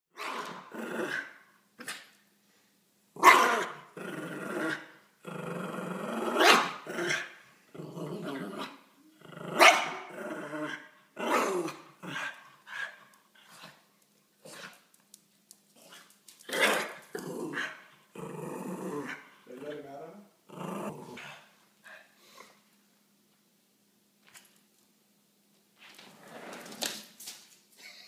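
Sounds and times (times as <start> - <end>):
dogs barking: 3.2 - 3.8, 9.6 - 10.1
dogs growling: 3.5 - 12.9, 15.8 - 21.5.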